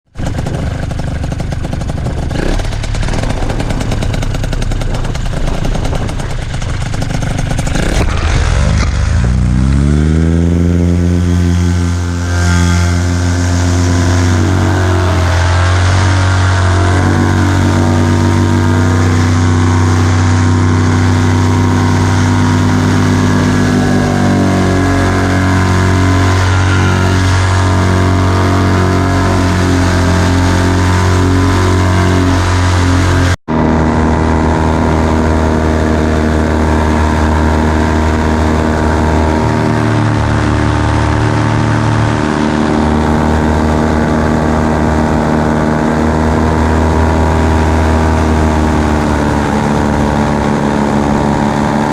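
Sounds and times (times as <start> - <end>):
wind buffeting on microphone: 0.1 - 12.2
paramotor engine revving: 0.1 - 51.9.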